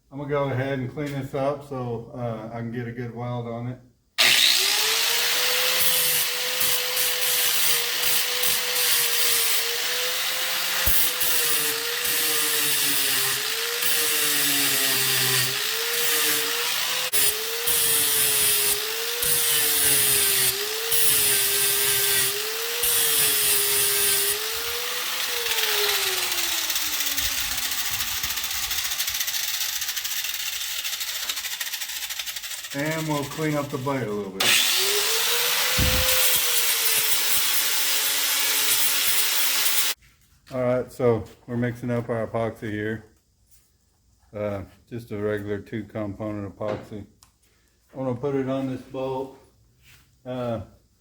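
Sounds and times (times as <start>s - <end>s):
power tool motor whine: 4.2s - 31.9s, 34.4s - 40.0s.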